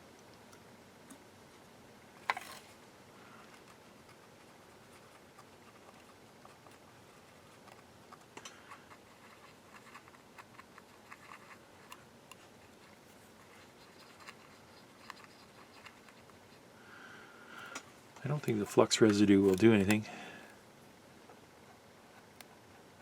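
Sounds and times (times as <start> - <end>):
light scratching and ticking: 2.2 - 16.7, 17.6 - 20.1.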